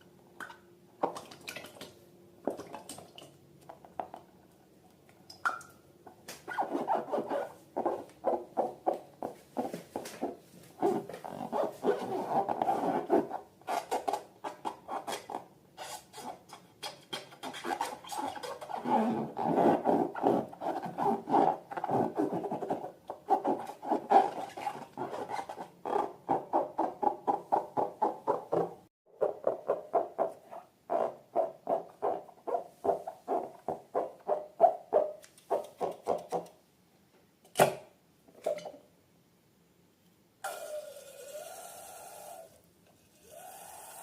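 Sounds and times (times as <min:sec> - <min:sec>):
rubber balloons squeaking: 0:06.5 - 0:14.0.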